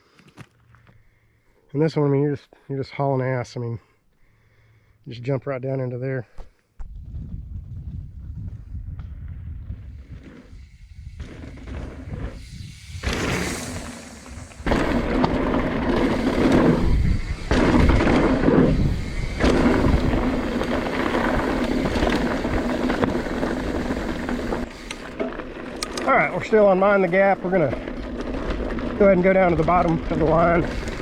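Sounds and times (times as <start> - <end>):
wind buffeting: 6.8 - 25.1
bike tyre and frame rattle: 6.8 - 31.0.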